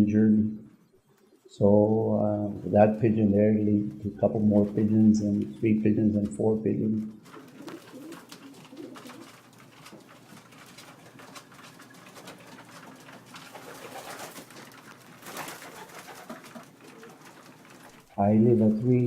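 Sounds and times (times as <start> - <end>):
pigeons cooing: 6.9 - 19.0.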